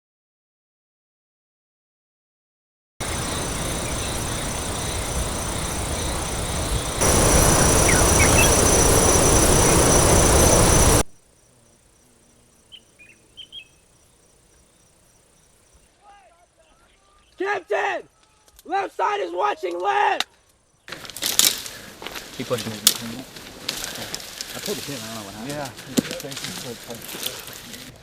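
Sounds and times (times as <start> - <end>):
loud rushing noise: 3.0 - 11.1
high insect drone: 3.0 - 15.9
bird chirps: 3.0 - 17.4.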